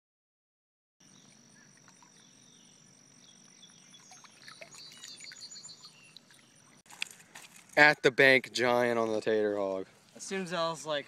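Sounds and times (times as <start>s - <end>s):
bird chirps: 1.0s - 6.8s
high-pitched insect drone: 1.0s - 6.8s.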